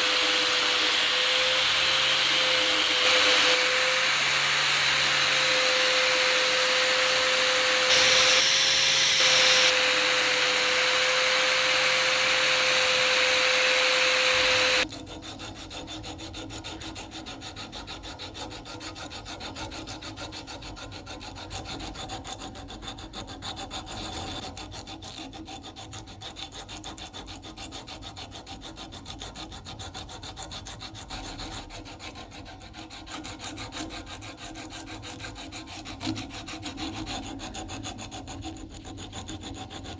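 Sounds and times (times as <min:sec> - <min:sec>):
power tool whining: 0:00.0 - 0:14.8.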